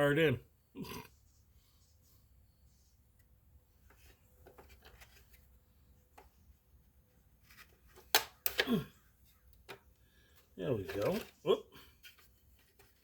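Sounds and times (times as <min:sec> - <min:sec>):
faint handling clicks and rubs: 0:01.3 - 0:08.2, 0:09.2 - 0:13.0.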